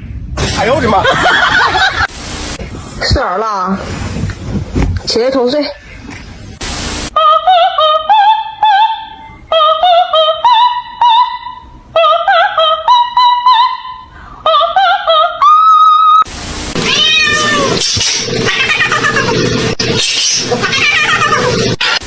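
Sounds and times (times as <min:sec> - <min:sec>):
cat yowling: 0:16.8 - 0:19.3, 0:20.6 - 0:21.6.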